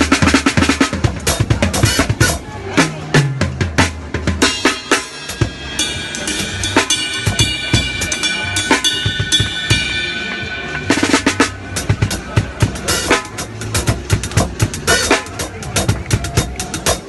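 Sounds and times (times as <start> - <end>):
drum kit fills: 0.0 - 17.0
cymbal ringing: 4.5 - 12.5.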